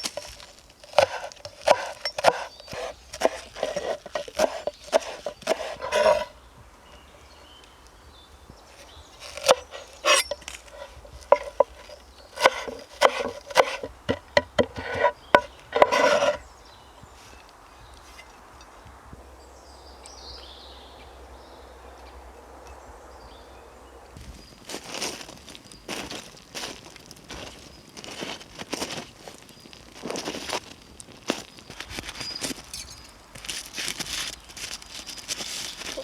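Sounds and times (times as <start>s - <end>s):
scraping and knocking on wood: 0.0s - 6.3s, 8.8s - 16.5s, 35.4s - 36.0s
faint outdoor background: 0.0s - 36.0s.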